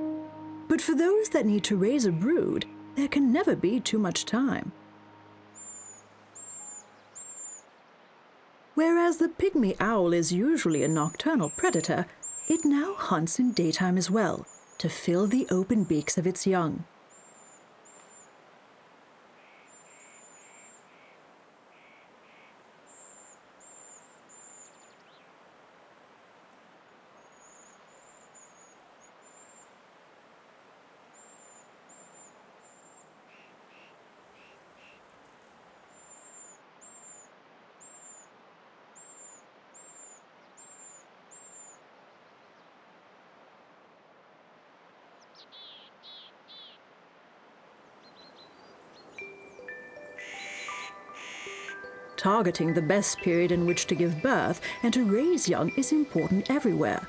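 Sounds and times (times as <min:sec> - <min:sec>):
soft outdoor hiss: 0:00.0 - 0:57.0
high-pitched bird calls: 0:50.1 - 0:53.8.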